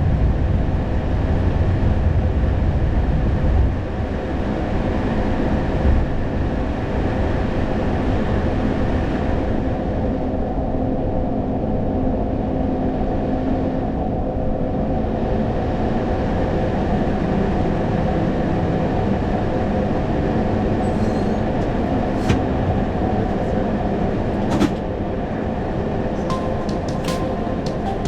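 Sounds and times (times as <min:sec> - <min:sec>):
cockpit rumble and hum: 0:00.0 - 0:28.0
brief high tone: 0:20.8 - 0:21.6, 0:26.3 - 0:28.0.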